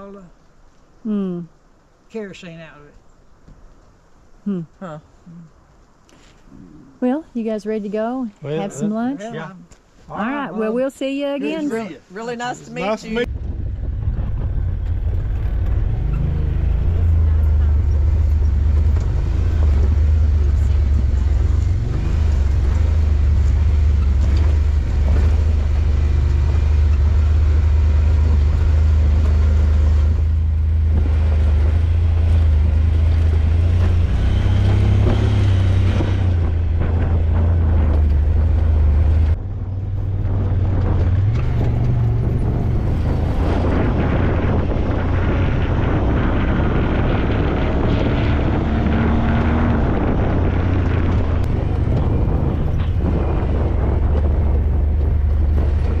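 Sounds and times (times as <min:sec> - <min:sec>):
vehicle engine running: 0:12.8 - 0:56.0
wind on microphone: 0:13.2 - 0:56.0.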